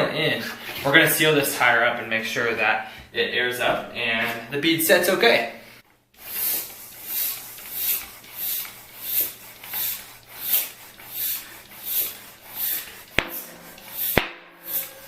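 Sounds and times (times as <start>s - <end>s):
bicycle pump air hiss: 6.2s - 15.0s
tire bead snapping onto rim: 13.2s - 14.8s.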